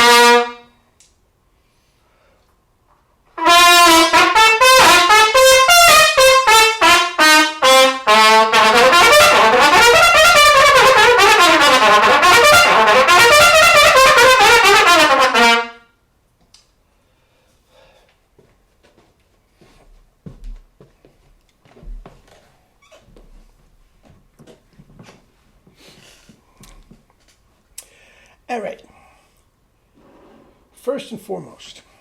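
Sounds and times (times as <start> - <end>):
solo trumpet fast notes: 0.0 - 0.7, 3.4 - 15.8.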